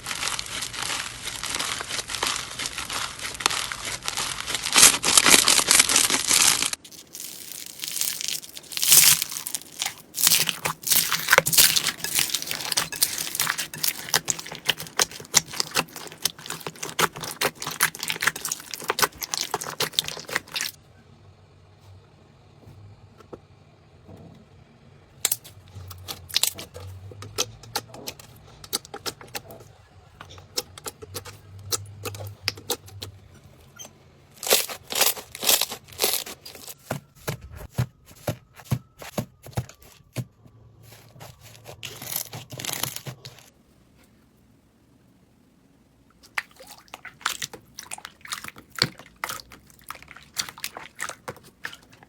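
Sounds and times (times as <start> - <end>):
slime crackling and popping: 0.0 - 20.8, 34.4 - 36.8, 46.2 - 52.0.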